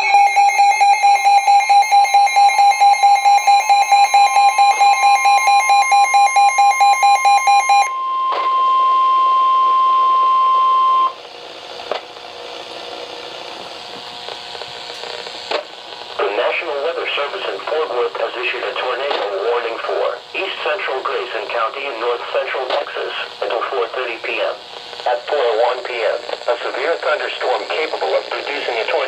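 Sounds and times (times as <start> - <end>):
electronic alarm beeping rapidly: 0.0 - 11.2
faint radio hiss: 11.4 - 29.0.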